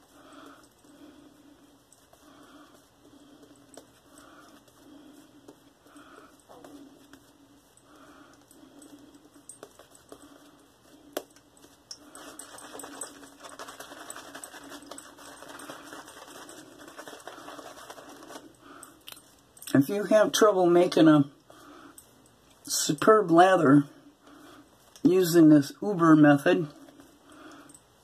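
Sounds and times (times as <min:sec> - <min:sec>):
shaving brush lathering soap: 0:09.5 - 0:18.5.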